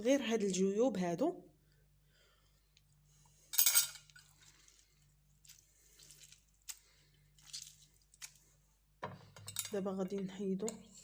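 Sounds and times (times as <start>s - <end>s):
spoon scraping lemon pulp: 10.6s - 11.0s.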